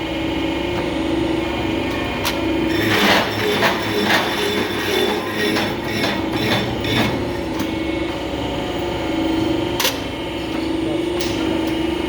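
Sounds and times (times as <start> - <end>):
milling machine humming: 0.0 - 12.0.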